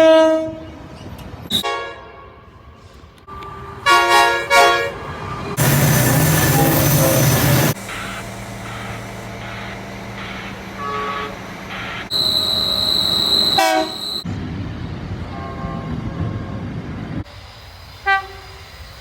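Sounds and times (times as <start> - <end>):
train horn blast: 0.0 - 0.7, 1.5 - 2.9, 3.8 - 7.8, 10.8 - 11.5, 12.1 - 14.2, 15.3 - 16.6, 18.0 - 18.5
train rumbling: 2.7 - 19.0
train running hum: 2.8 - 19.0
steady high-pitched tone: 11.7 - 14.2.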